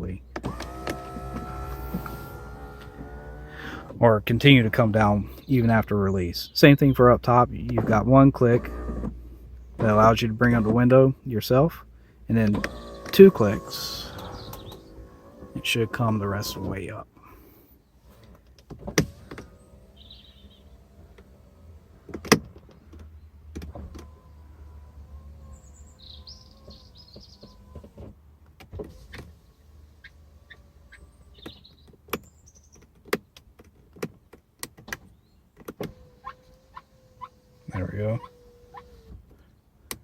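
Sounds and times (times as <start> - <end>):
power window motor whine: 0.4 - 5.0, 7.8 - 9.3, 9.9 - 10.9, 12.3 - 16.9, 18.0 - 22.4, 23.6 - 28.1, 28.8 - 31.6, 35.8 - 39.2.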